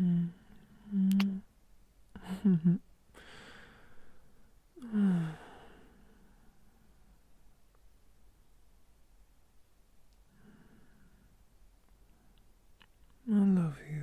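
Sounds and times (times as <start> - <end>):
breathy exhale: 3.2 - 6.6, 10.3 - 11.3
man sighing: 4.8 - 6.0
man's broken voiced sound: 13.3 - 14.0.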